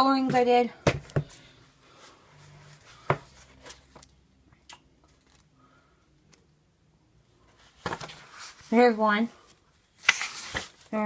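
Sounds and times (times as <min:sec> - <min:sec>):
paper rustling: 0:10.0 - 0:10.9.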